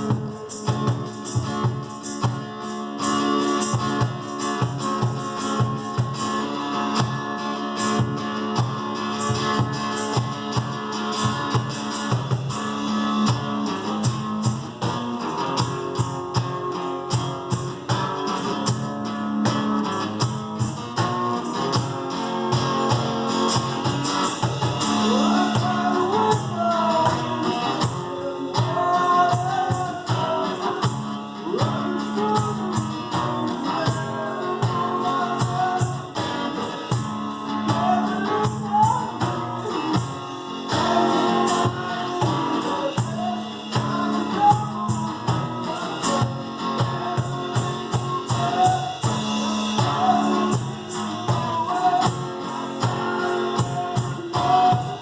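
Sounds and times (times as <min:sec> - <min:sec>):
acoustic guitar: 0:00.0 - 0:55.0
percussion steady beat: 0:00.0 - 0:55.0
person singing: 0:23.4 - 0:55.0.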